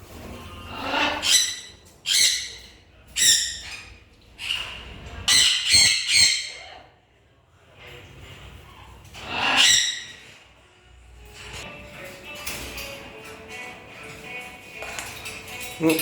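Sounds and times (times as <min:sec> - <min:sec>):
parrot squawking: 0:00.6 - 0:07.0, 0:09.1 - 0:10.4.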